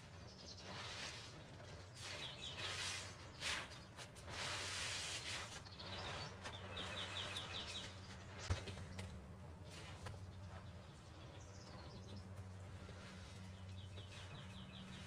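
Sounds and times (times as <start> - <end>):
songbirds chirping: 0.0 - 4.4, 5.2 - 15.0
sponge squishing and splashing: 2.0 - 6.2
steady low hum: 5.7 - 15.0.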